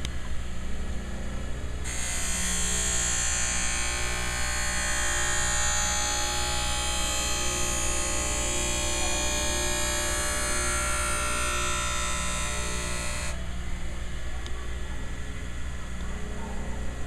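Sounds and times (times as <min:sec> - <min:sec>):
sharpening machine hum: 0:01.8 - 0:13.4.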